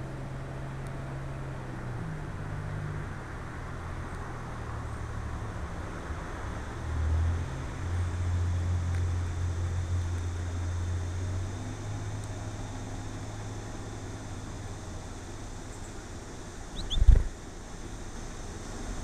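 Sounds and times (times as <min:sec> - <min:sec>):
constant hiss: 0:00.0 - 0:19.0
low mechanical hum: 0:00.0 - 0:19.0.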